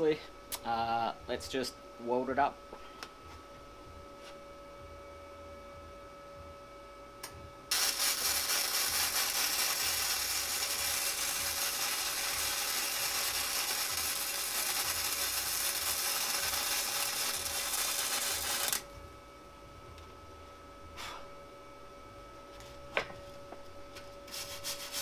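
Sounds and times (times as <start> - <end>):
welding arc crackle: 7.7 - 18.9.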